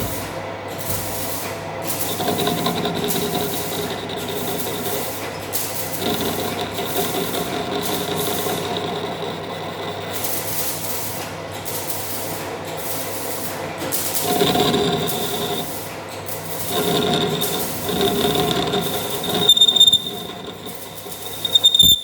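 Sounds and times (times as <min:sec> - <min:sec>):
metal lathe humming and whining: 0:01.9 - 0:10.9, 0:14.0 - 0:22.0
cutting tool scraping metal: 0:01.9 - 0:11.2, 0:13.8 - 0:22.0.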